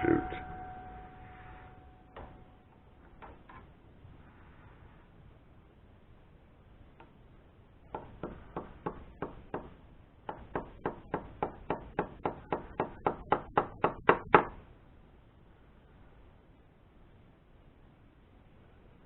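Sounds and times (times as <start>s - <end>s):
hammer tapping metal: 0.0s - 2.5s.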